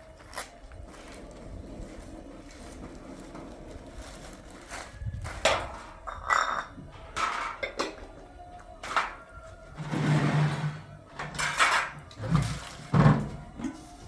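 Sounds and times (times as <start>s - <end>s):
hard objects clinking together: 5.4s - 8.0s.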